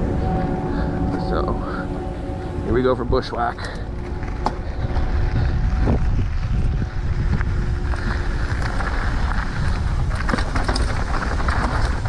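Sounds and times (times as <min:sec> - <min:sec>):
wind buffeting microphone: 0:00.0 - 0:12.0
mountain bike rolling on dirt: 0:02.4 - 0:12.0
bike clicks and rattles: 0:03.6 - 0:12.0.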